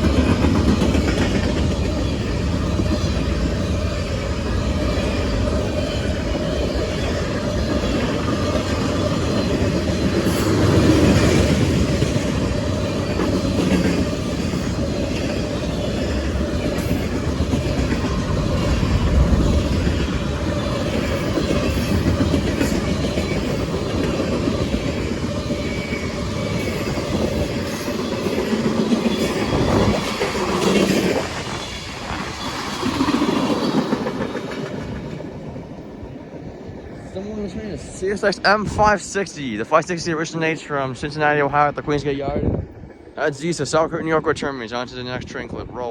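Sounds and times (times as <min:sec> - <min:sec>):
freight train wheels clattering: 0:00.0 - 0:36.2.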